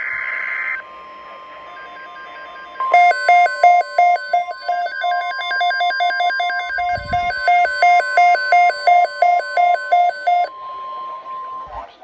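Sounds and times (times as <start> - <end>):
faint steady tone with soft beeps: 1.0 - 10.5
warbling electronic alert beeping: 3.0 - 10.5.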